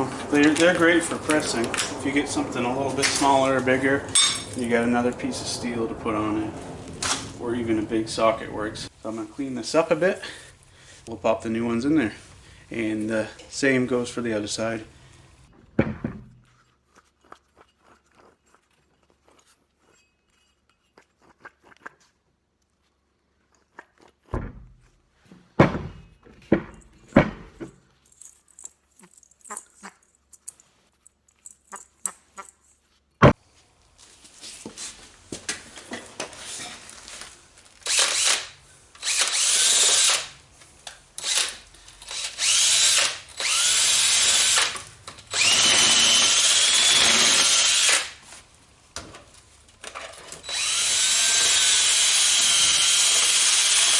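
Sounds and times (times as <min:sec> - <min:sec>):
metal tools clinking: 0:04.2 - 0:04.6, 0:15.6 - 0:21.9, 0:24.8 - 0:33.0
power tool wire wheel spinning: 0:23.5 - 0:32.9.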